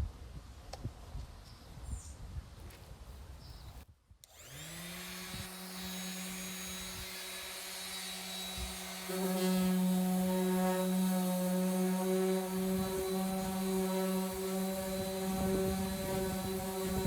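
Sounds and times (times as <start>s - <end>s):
electric sander humming: 4.3s - 17.0s.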